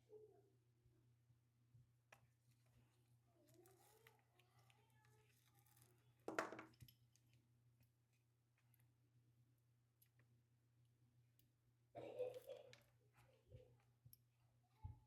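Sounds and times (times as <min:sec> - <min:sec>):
faint clicks of small parts: 0:02.1 - 0:09.0, 0:09.9 - 0:10.4, 0:11.3 - 0:15.0.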